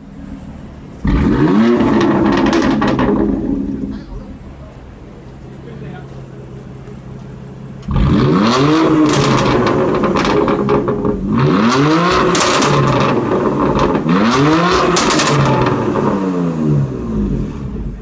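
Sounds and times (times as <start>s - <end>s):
car engine revving: 0.0s - 6.8s, 7.6s - 18.0s
exhaust crackles and pops: 1.0s - 4.4s, 6.8s - 16.2s.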